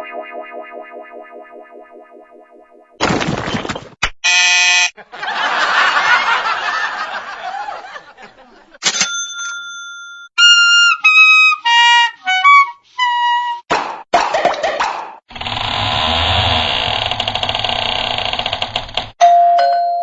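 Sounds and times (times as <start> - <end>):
buzzy tone: 15.3 - 17.2.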